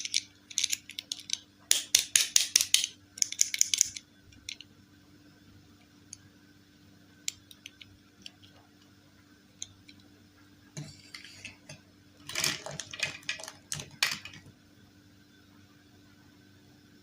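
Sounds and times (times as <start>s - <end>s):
small hard objects clicking: 0.0s - 4.6s, 12.2s - 14.5s.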